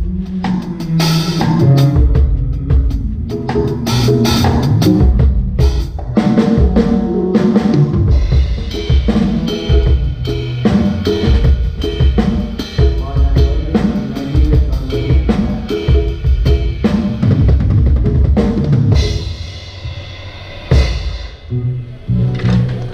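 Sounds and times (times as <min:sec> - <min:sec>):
drum kit hits: 0:00.0 - 0:20.1, 0:20.7 - 0:21.4
live band playing: 0:00.0 - 0:22.9
ringing cymbal wash: 0:08.2 - 0:17.2.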